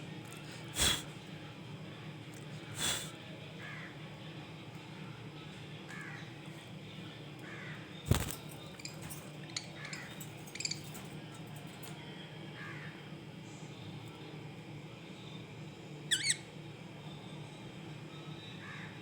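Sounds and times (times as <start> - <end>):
steady low hum: 0.0 - 19.0
budgerigars chirping: 16.1 - 16.4.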